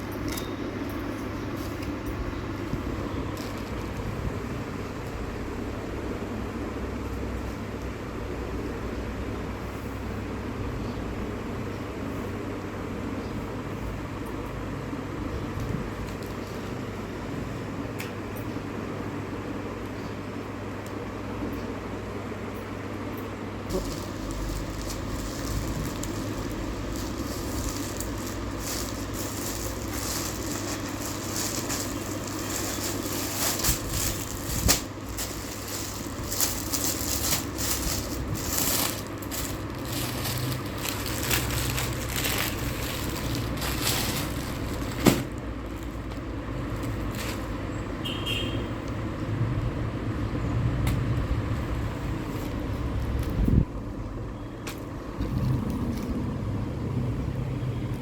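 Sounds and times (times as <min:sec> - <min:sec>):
packaging crinkling and rustling: 0:02.6 - 0:04.3, 0:23.7 - 0:47.6
steady low hum: 0:16.8 - 0:48.0, 0:48.8 - 0:58.0.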